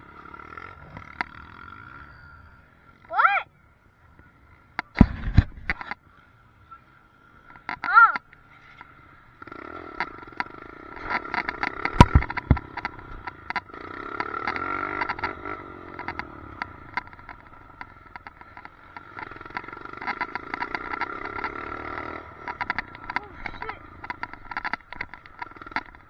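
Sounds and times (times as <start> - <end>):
loose mount rattling clicks: 11.8 - 12.9.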